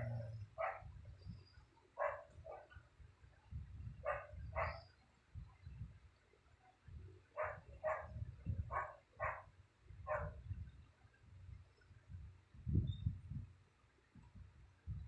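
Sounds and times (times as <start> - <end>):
dog barking: 0.0 - 0.9, 2.0 - 2.8, 4.0 - 4.9, 7.4 - 9.5, 10.1 - 10.4
low rumble: 0.0 - 1.5.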